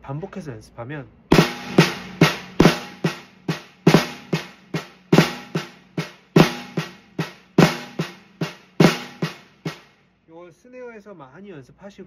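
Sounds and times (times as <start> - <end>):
snare drum strokes: 1.3 - 9.9.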